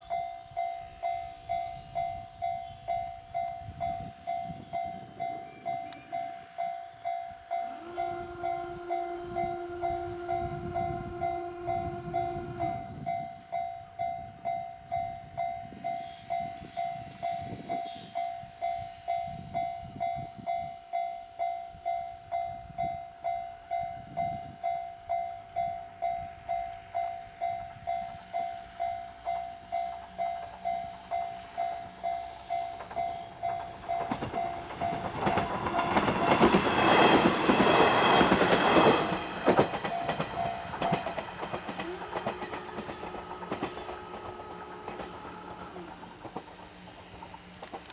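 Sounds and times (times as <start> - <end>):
diesel train rumbling: 0.0 - 20.4, 22.2 - 47.9
level-crossing warning bell: 0.0 - 47.8
train horn: 4.0 - 14.0, 27.8 - 46.4
train wheels clattering: 29.1 - 47.9.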